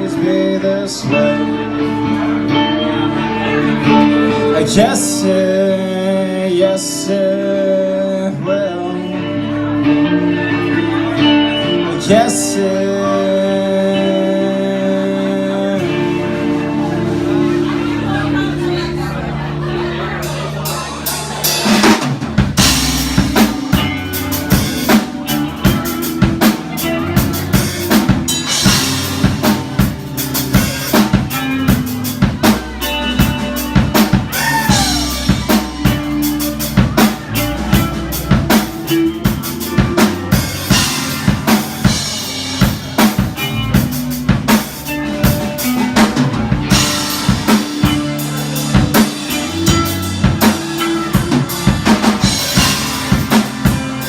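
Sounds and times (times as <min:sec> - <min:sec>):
live rock band playing: 0:00.0 - 0:54.0
sustained bass notes: 0:00.0 - 0:54.0
drum kit beat: 0:20.1 - 0:54.0.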